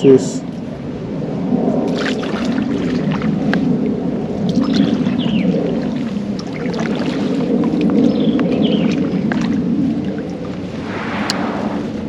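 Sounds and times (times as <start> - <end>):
kayak pedal drive churning water: 1.8 - 10.7.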